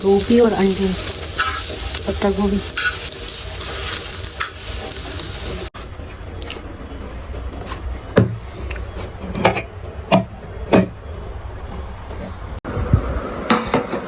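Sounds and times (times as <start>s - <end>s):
food sizzling in a frying pan: 0.0s - 5.8s.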